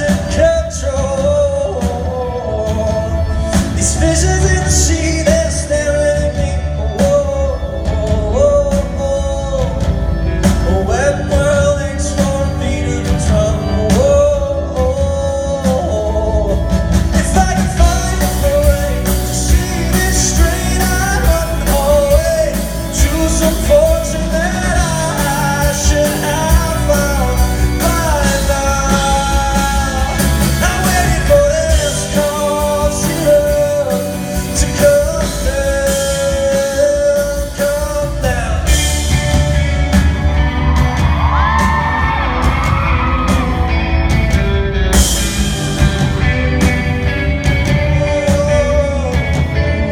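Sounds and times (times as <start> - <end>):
live pop-rock band: 0.0 - 49.9
person singing: 0.0 - 49.9
audience yelling: 39.1 - 47.4.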